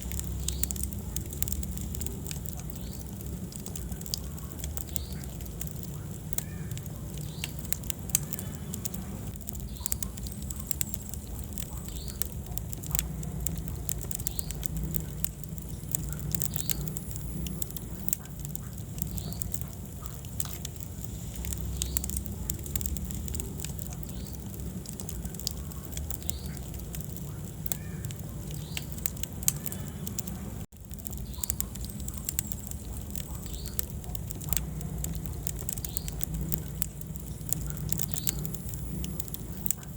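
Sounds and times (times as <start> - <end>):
hissing squeaks from burning logs: 0.0 - 39.9
low rumble of flames: 0.0 - 39.9
wood fire crackling and popping: 0.0 - 39.9.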